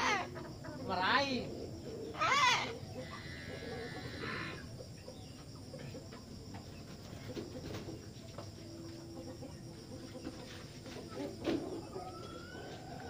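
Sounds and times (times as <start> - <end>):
low background noise: 0.0 - 13.0.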